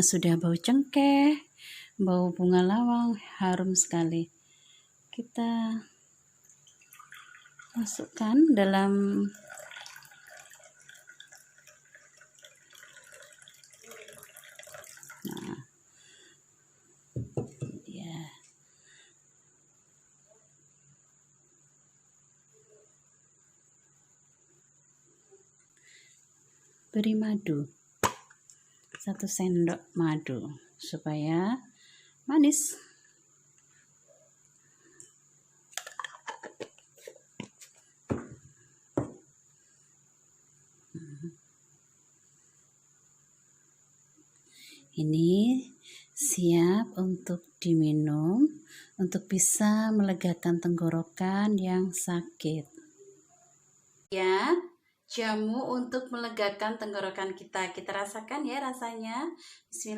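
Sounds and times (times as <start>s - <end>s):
liquid trickling into a glass: 6.4s - 8.3s, 9.0s - 15.7s
spoon knocking on a cup: 17.2s - 17.8s.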